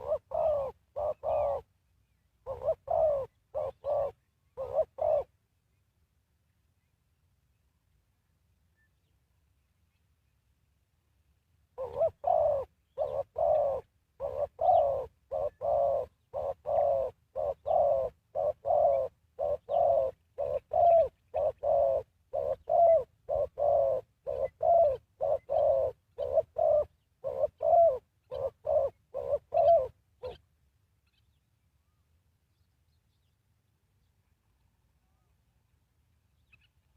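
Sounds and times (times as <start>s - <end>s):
dove cooing: 0.0s - 1.7s, 2.4s - 5.4s, 11.8s - 30.4s.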